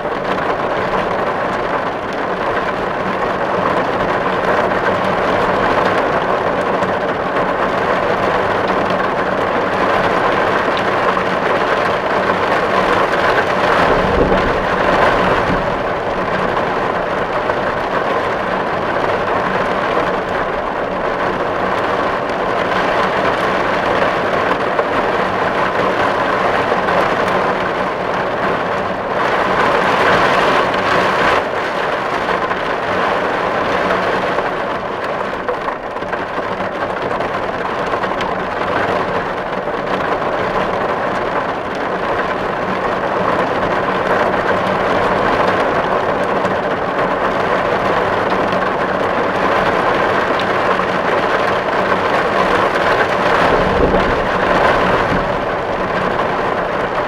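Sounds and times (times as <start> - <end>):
rain on a tin roof: 0.0 - 57.0
low rumble: 13.2 - 19.0, 52.2 - 57.0.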